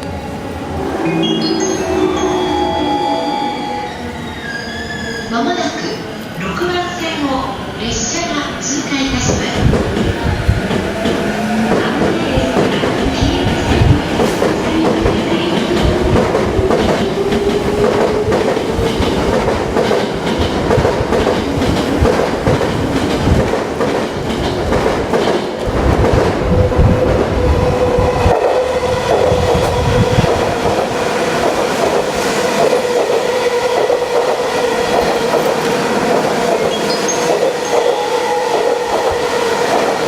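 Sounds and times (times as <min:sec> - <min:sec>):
electric train whine: 0:00.0 - 0:05.4.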